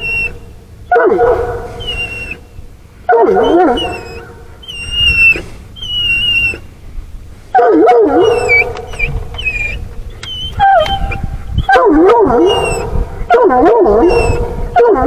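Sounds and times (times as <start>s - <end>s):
dog howling: 0.0s - 0.4s, 3.2s - 6.6s, 7.6s - 15.0s
dog whining: 0.0s - 0.4s, 1.8s - 2.5s, 3.3s - 6.7s, 7.9s - 14.6s.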